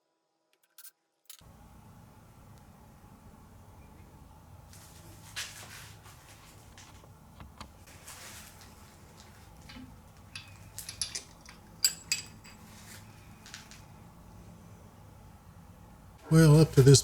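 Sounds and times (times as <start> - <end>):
tools clicking and scraping: 8.6 - 13.9
ringing metal clinks: 10.2 - 12.7.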